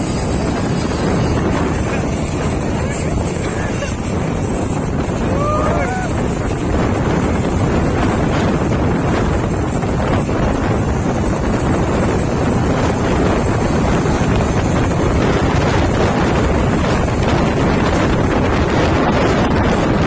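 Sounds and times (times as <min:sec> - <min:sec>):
truck engine and road rumble: 0:00.0 - 0:20.0
wind buffeting microphone: 0:00.0 - 0:20.0.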